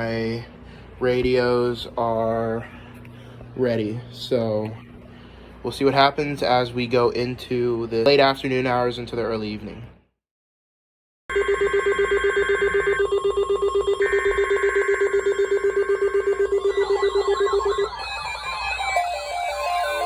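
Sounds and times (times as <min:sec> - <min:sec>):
fast pulsing alarm beep: 0:11.3 - 0:20.0
warbling siren-like alert tones: 0:11.3 - 0:20.0
screeching digital alert tones: 0:14.0 - 0:20.0.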